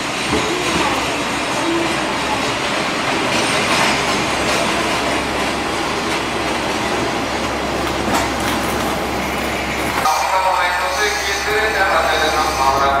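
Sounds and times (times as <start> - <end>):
train wheels rumbling on rails: 0.0 - 13.0.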